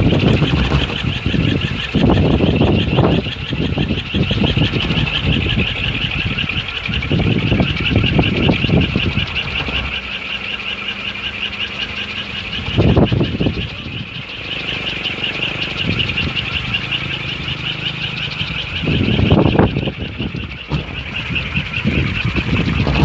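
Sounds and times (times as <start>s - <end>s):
wind gusts on microphone: 0.0s - 10.4s, 11.3s - 23.0s
high pulsing chirr: 0.0s - 23.0s
wooden propeller humming: 0.0s - 23.0s.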